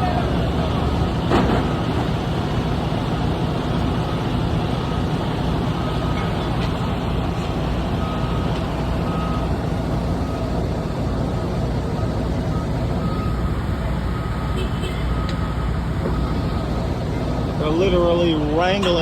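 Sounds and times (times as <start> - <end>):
diesel engine running: 0.0 - 19.0
faint reversing alarm beeping: 4.2 - 19.0.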